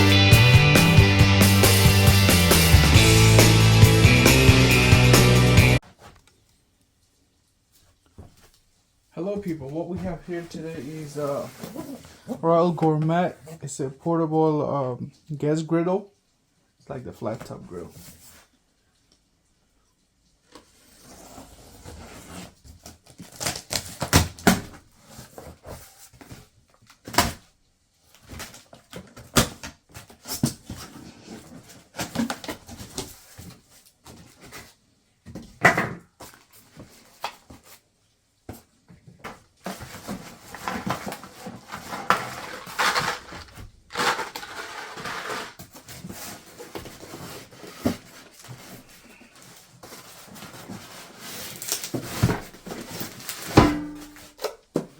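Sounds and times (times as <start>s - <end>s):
cardboard packaging handled: 10.0s - 12.3s, 20.6s - 27.4s, 28.1s - 35.4s, 38.5s - 54.9s
packaging rustling: 39.6s - 53.6s.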